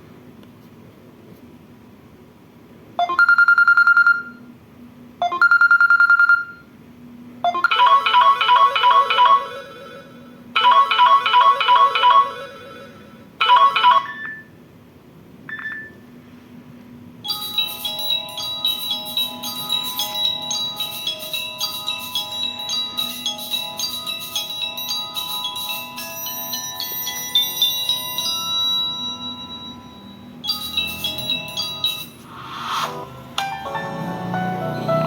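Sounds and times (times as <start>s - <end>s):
electronic ringtone melody: 7.5s - 14.5s, 17.3s - 35.0s
buzzing trilled beeps: 27.4s - 33.1s.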